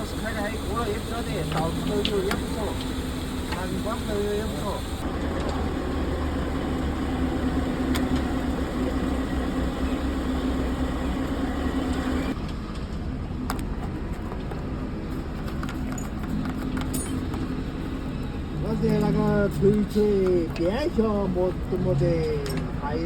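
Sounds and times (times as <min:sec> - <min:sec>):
heavy machinery engine droning: 0:00.0 - 0:15.1.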